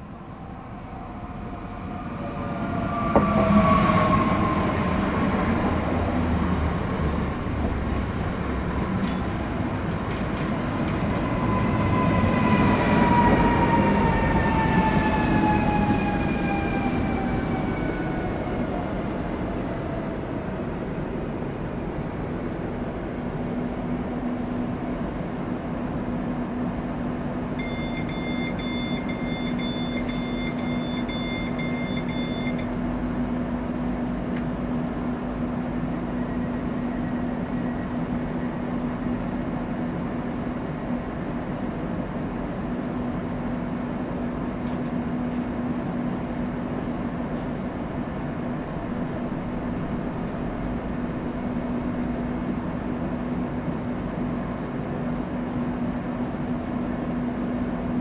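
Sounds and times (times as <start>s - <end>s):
train whine coming to rest: 0.0s - 21.4s.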